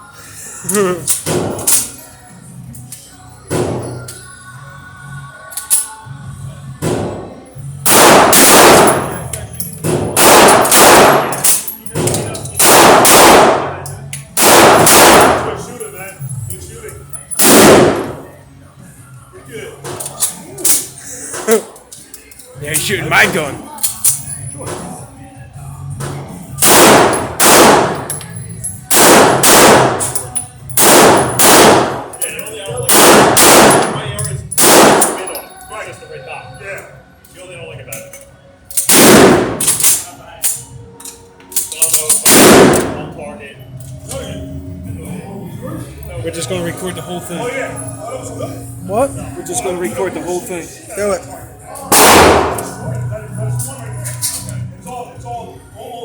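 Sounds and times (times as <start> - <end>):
loud gunshots echoing: 6.8 - 13.8, 14.4 - 15.7, 17.4 - 18.3, 26.6 - 28.1, 28.9 - 30.2, 30.8 - 32.1, 32.9 - 35.3, 38.9 - 40.0, 42.2 - 43.2, 51.9 - 52.9
faint distant gunshots: 14.4 - 15.6, 42.3 - 43.0, 51.9 - 52.8.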